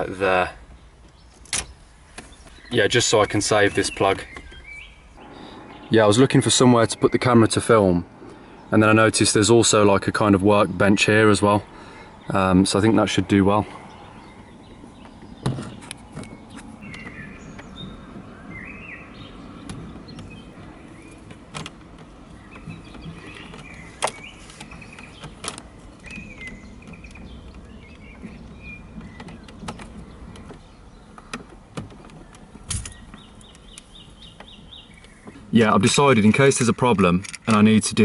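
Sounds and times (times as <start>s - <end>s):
birds chirping: 0.0s - 38.0s
clicks of hand tools and wire: 21.1s - 28.3s, 29.0s - 35.4s, 36.6s - 37.9s.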